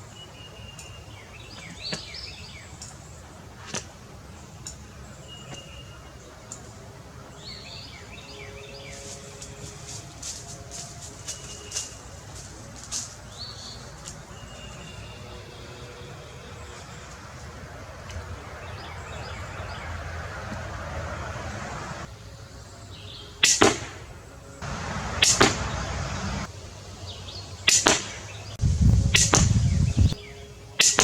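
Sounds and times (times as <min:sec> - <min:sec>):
dull low rumble: 0:28.6 - 0:30.2.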